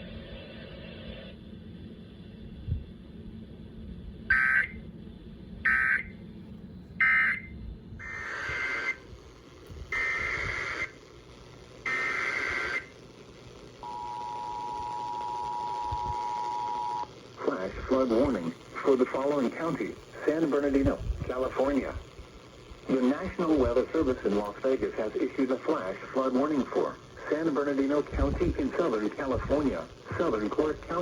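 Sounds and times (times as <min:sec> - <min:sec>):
buzzy data bursts: 0:07.0 - 0:31.0
two-tone attention signal: 0:13.8 - 0:17.1.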